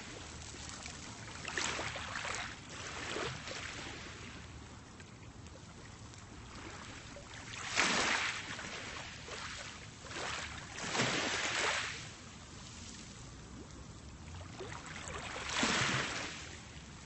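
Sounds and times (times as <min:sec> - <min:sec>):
waves washing onto pebble beach: 0:15.4 - 0:16.5.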